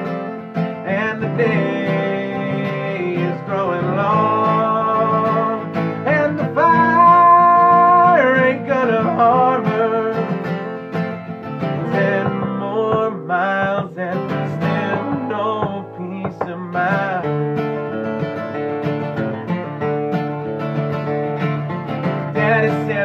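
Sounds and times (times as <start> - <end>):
acoustic guitar playing: 0.0 - 23.0
person singing: 0.8 - 10.4, 11.6 - 17.5, 22.3 - 23.0.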